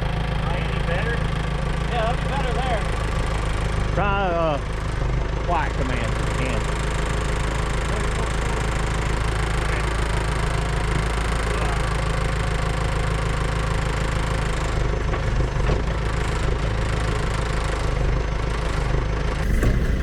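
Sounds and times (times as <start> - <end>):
diesel engine running: 19.4 - 20.0.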